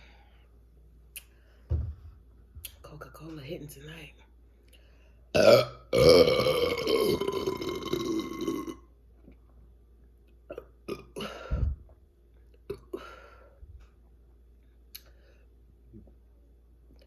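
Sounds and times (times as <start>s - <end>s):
woman burping loudly: 5.4s - 8.9s, 10.5s - 11.5s.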